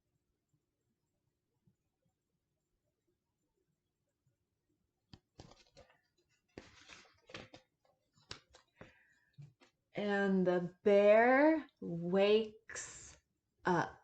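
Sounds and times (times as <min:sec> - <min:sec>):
paper pages being turned: 0:05.2 - 0:09.8.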